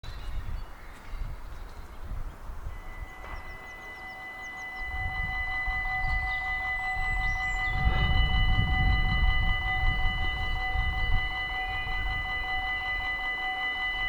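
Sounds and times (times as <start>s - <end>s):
bird chirps: 0.0s - 9.4s
low rumble: 0.0s - 13.2s
level crossing bells ringing: 2.6s - 14.0s.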